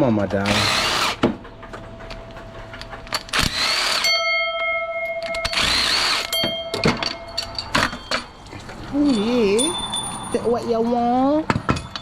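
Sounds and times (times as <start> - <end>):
cordless drill whirring: 0.5 - 1.2, 3.3 - 4.0, 5.5 - 6.3
steady pitched tone: 4.0 - 12.0.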